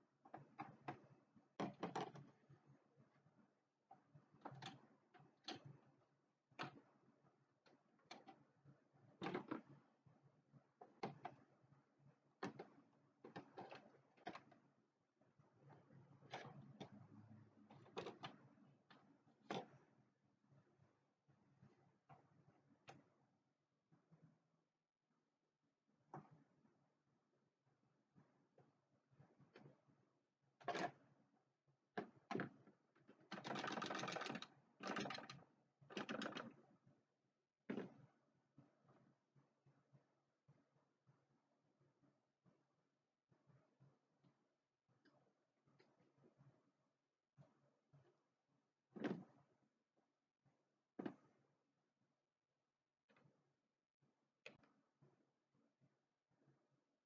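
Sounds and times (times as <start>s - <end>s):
faint clicks and knocks of parts: 0.0s - 24.7s, 27.9s - 40.5s, 50.8s - 51.6s, 53.0s - 53.6s
rapid mechanical clicking: 33.3s - 36.6s.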